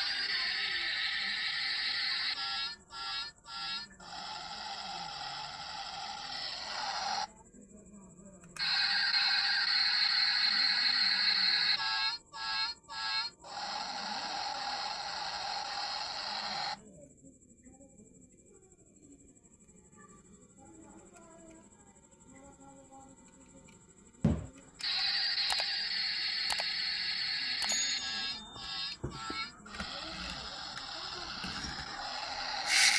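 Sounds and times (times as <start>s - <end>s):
tinny buzzy toy sound effect: 0.0s - 7.3s, 8.6s - 16.8s, 24.8s - 32.9s.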